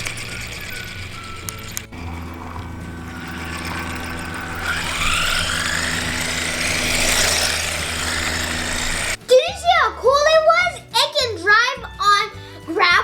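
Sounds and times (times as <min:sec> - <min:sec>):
steady low hum: 0:00.0 - 0:09.2
toy truck motor whirring: 0:00.0 - 0:09.2.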